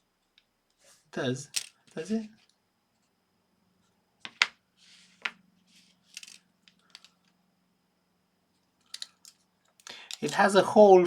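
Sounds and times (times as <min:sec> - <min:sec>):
faint steady hum: 0:00.0 - 0:11.0
plastic parts clicking: 0:01.5 - 0:02.0, 0:06.1 - 0:07.4, 0:08.8 - 0:10.5.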